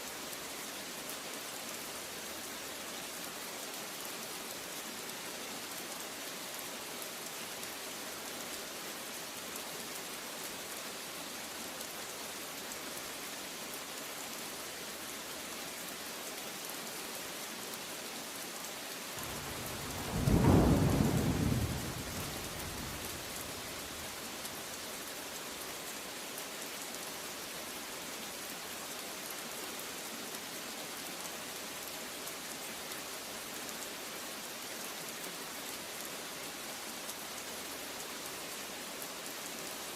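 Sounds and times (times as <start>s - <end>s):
steady downpour of rain: 0.0s - 39.9s
thunder clap: 19.2s - 23.9s.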